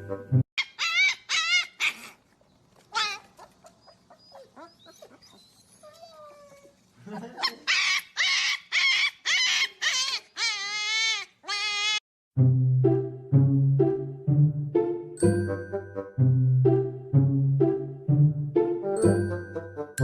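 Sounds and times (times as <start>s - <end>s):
young animal crying: 0.6s - 2.2s, 2.9s - 6.8s, 7.4s - 12.0s.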